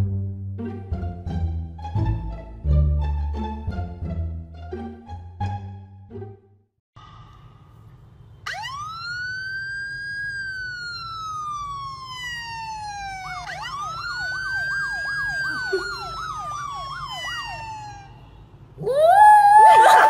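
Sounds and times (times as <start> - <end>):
siren wailing: 8.4 - 20.0
siren yelping warble: 8.5 - 20.0.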